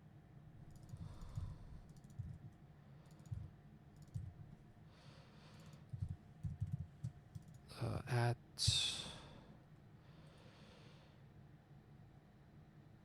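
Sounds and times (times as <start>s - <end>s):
faint keyboard typing: 0.6s - 4.6s, 5.5s - 7.7s.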